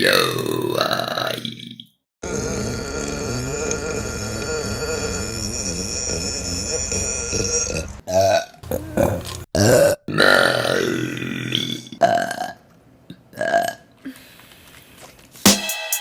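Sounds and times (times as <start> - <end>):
woman burping: 8.6 - 10.0.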